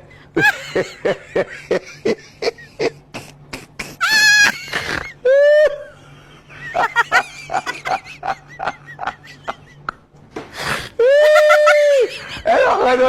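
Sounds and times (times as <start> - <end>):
person laughing: 0.4 - 10.0, 10.6 - 13.0
high-pitched vocal cries: 4.0 - 5.9.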